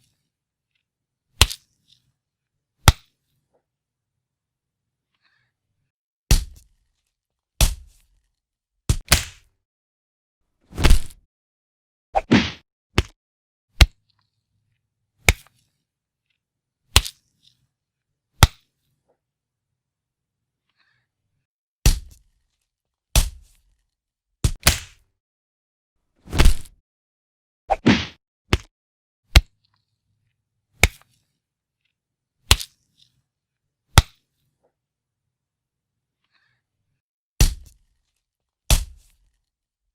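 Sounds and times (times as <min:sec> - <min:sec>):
punch sound effects: 0:10.7 - 0:11.2, 0:12.2 - 0:12.6, 0:26.3 - 0:26.8, 0:27.7 - 0:28.2.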